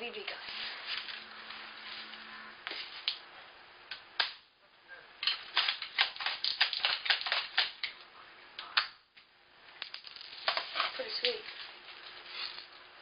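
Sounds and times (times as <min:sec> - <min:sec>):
sharp plastic clicks: 0:05.2 - 0:08.0.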